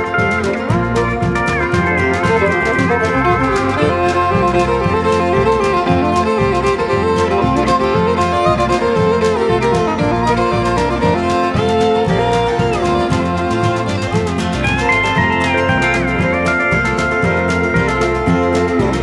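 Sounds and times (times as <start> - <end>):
fiddle melody: 0.0 - 19.0
guitar: 0.0 - 19.0
steady beat: 0.0 - 19.0.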